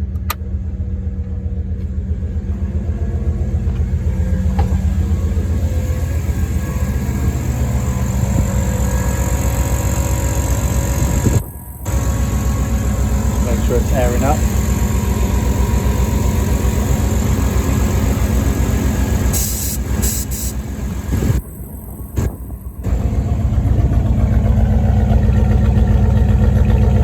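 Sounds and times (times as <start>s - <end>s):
pickup engine idling: 0.0s - 27.0s.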